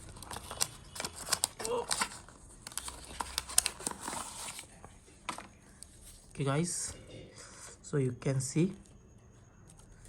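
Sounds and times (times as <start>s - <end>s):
paper rustling and crinkling: 0.0s - 6.3s.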